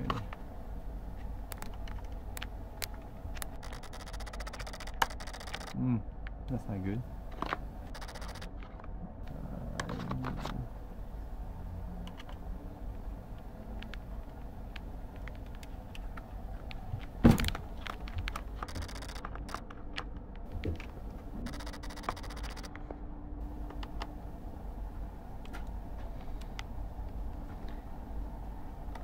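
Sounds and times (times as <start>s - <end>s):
screwdriver clicking and scraping: 1.5s - 5.7s, 17.8s - 19.7s, 21.5s - 22.7s.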